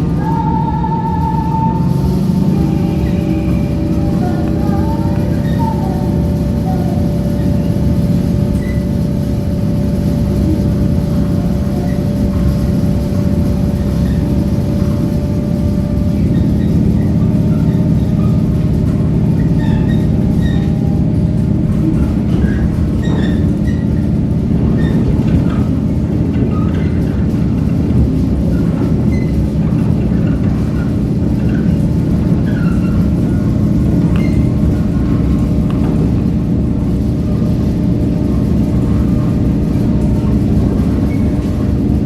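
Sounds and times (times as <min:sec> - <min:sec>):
train rumbling on rails: 0:00.0 - 0:42.0.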